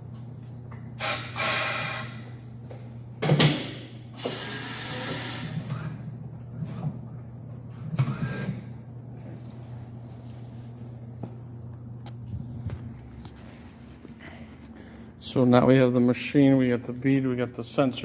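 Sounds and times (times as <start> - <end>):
steady hum: 0.0 - 18.0
short squeaks: 5.2 - 8.8.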